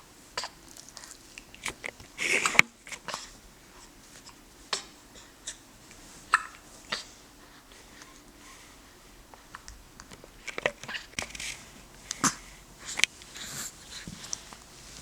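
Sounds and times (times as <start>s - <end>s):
baby hiccuping: 6.3s - 7.0s, 12.2s - 12.5s.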